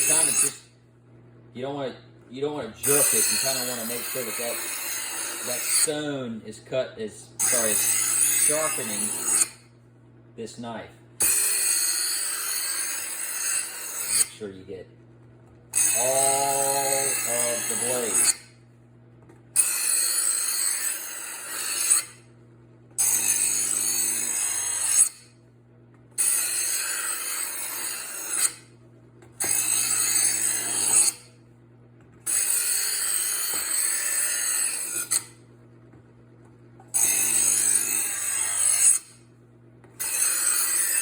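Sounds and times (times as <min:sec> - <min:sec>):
knife grinding rasp: 0:00.0 - 0:00.7, 0:02.8 - 0:06.0, 0:07.4 - 0:09.6, 0:11.2 - 0:14.4, 0:15.7 - 0:18.5, 0:19.6 - 0:22.2, 0:23.0 - 0:25.3, 0:26.2 - 0:28.7, 0:29.4 - 0:31.4, 0:32.2 - 0:35.4, 0:36.9 - 0:39.2, 0:40.0 - 0:41.0
knife sharpener motor hum: 0:00.0 - 0:00.7, 0:02.5 - 0:06.2, 0:07.4 - 0:09.7, 0:10.4 - 0:14.6, 0:15.7 - 0:18.6, 0:19.5 - 0:22.3, 0:23.0 - 0:25.4, 0:26.2 - 0:31.4, 0:32.2 - 0:35.5, 0:36.8 - 0:39.3, 0:39.9 - 0:41.0.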